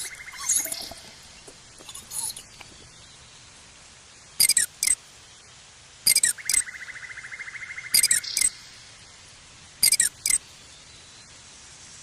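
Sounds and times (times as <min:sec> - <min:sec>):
high-pitched animal chirps: 0:00.0 - 0:02.8, 0:04.4 - 0:05.0, 0:06.1 - 0:07.0, 0:07.8 - 0:08.6, 0:09.8 - 0:10.4.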